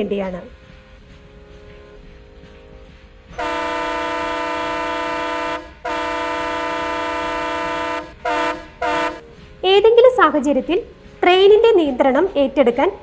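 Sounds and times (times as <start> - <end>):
locomotive horn blasts: 3.4 - 9.2.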